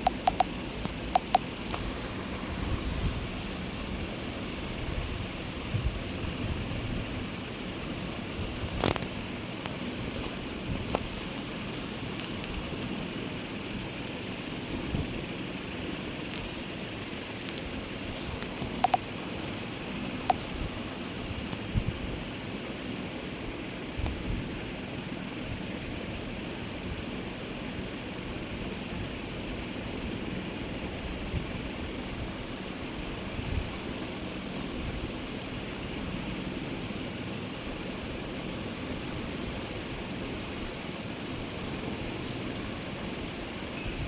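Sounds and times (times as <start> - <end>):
rushing hiss: 0.3 - 4.5.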